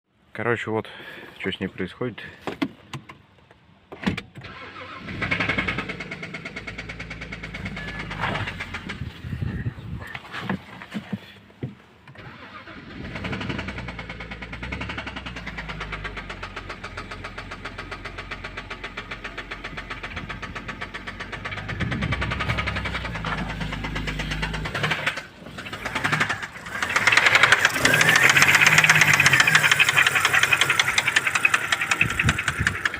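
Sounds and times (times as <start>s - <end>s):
car engine knocking: 5.4s - 9.6s, 13.2s - 32.9s.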